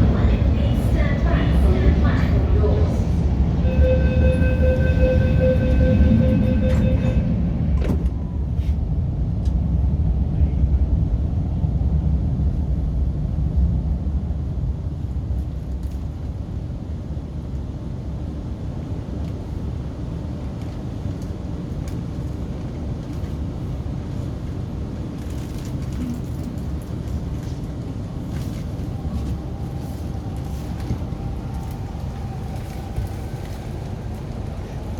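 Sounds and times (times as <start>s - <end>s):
low rumble of train interior: 0.0s - 34.9s
train door-closing chime: 3.7s - 8.1s
train door clunk: 5.7s - 8.8s.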